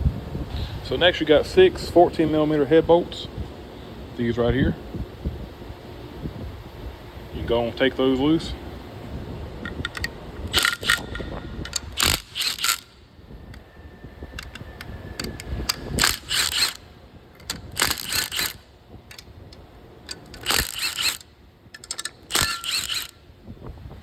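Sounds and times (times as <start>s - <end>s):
ratchet wrench clicking: 9.6s - 13.0s, 14.3s - 23.2s.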